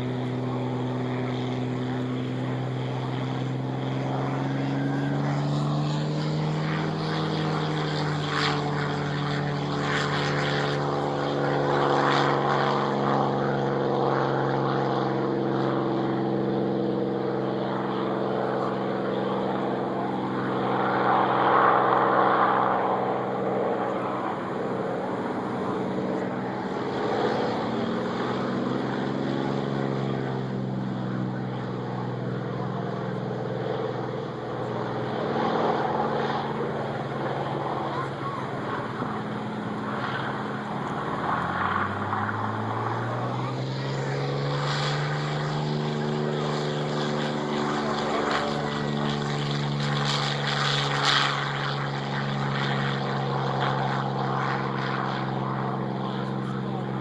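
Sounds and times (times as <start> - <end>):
propeller aircraft engines droning: 0.0 - 57.0.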